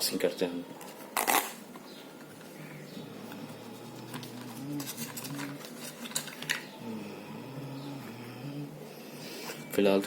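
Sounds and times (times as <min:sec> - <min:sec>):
packaging rustling: 0:03.8 - 0:06.8.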